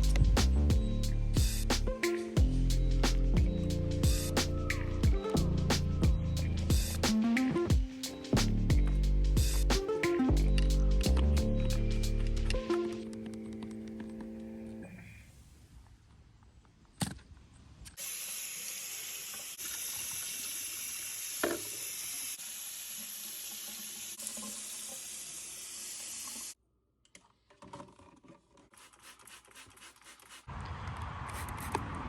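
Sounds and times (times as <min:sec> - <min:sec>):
pressure washer spraying: 0:18.0 - 0:26.6.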